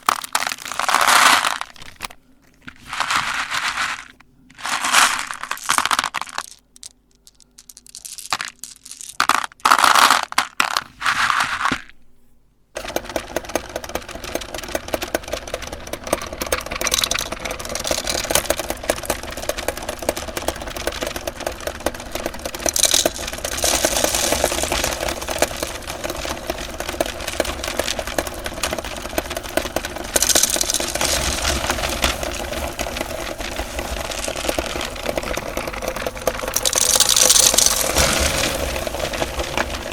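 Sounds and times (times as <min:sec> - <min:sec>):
meat grinder motor crunching candies: 0:00.0 - 0:02.1, 0:12.8 - 0:39.9
crunching and rattling: 0:00.0 - 0:12.0, 0:12.8 - 0:39.9.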